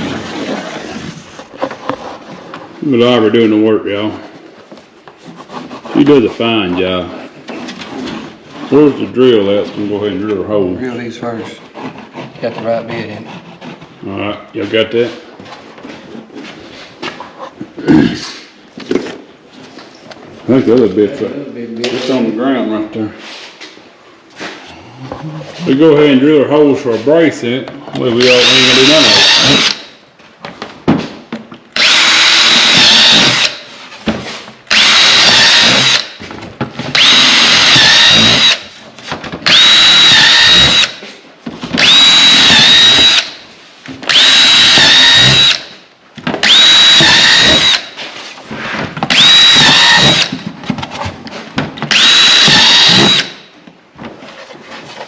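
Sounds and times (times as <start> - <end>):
power drill whining: 28.2 - 29.9, 31.8 - 33.7, 34.7 - 36.2, 36.9 - 38.7, 39.4 - 41.0, 41.8 - 43.4, 44.1 - 45.8, 46.4 - 48.0, 49.1 - 50.4, 51.9 - 53.5.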